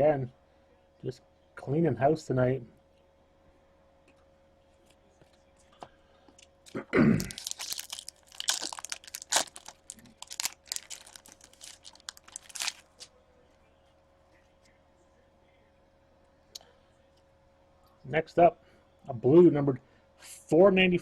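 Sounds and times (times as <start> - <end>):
foil wrapper crinkling and tearing: 7.2 - 13.1.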